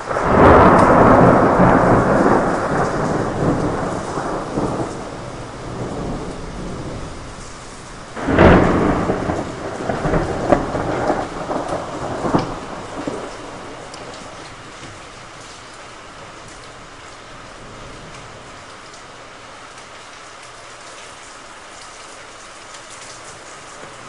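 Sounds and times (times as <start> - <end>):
sharp thunderclap: 0.0 - 15.1
thunder rumbling: 0.0 - 18.6
steady rain: 0.0 - 24.0.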